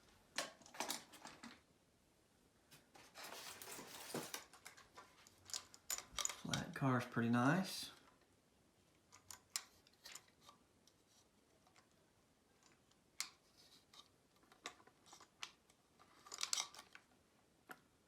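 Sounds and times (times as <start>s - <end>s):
loose toy crates rattling: 3.2s - 6.8s.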